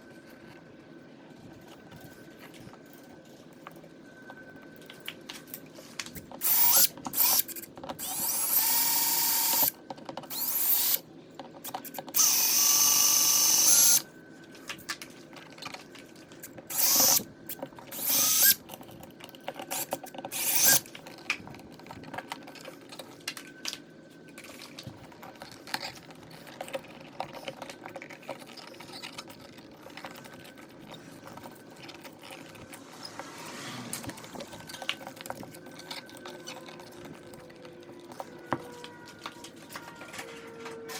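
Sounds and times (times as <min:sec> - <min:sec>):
power drill running: 0:06.4 - 0:09.7, 0:10.3 - 0:11.0, 0:12.2 - 0:14.0, 0:16.7 - 0:17.2, 0:17.9 - 0:18.6, 0:20.3 - 0:20.8.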